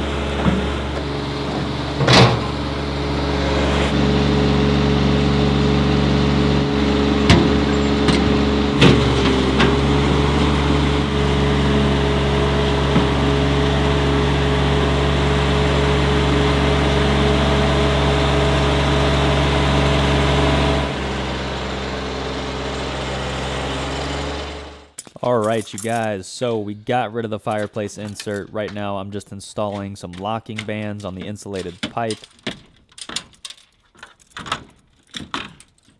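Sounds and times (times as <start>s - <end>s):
tractor engine running: 0.0s - 26.6s
sharp metal clanks and knocks: 0.3s - 2.7s, 29.7s - 35.9s.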